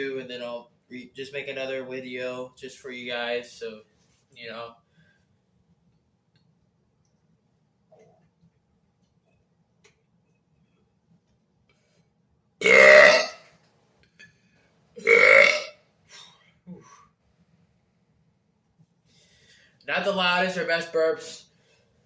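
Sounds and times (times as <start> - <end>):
man burping: 12.6 - 13.4, 15.0 - 15.8.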